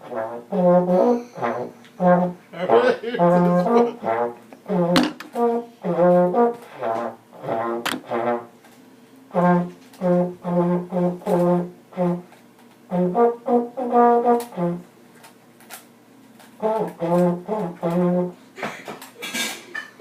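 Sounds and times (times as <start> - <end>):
trombone short detached notes: 0.0 - 8.6, 9.3 - 14.8, 16.6 - 18.4.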